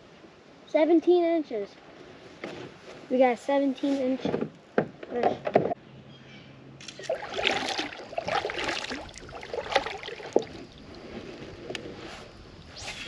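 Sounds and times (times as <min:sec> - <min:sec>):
water splashing around a kayak: 0:06.8 - 0:12.1.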